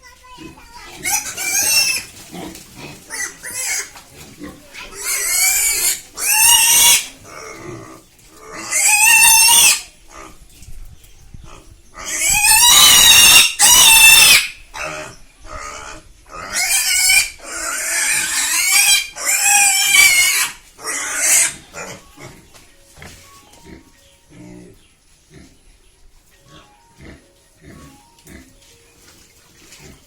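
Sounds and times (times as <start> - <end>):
pigs squealing: 0.4 - 10.4, 11.4 - 22.5.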